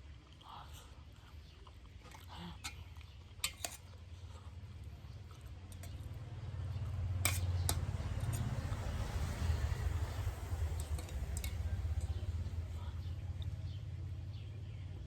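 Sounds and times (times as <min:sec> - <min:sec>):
spoon clinking on metal tray: 0:07.2 - 0:08.7, 0:10.6 - 0:12.4.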